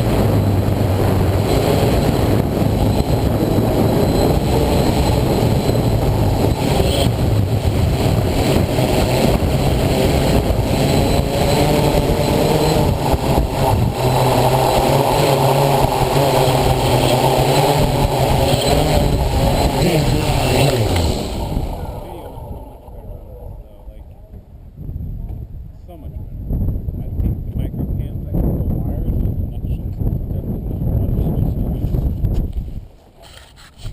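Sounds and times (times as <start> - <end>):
drone motors and propellers droning: 0.0 - 24.9
wind buffeting microphone: 0.0 - 33.0.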